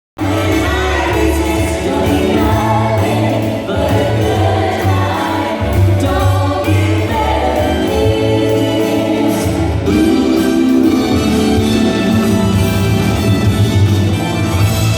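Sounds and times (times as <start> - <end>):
group singing: 0.2 - 13.8
strong continuous bass: 0.2 - 14.9.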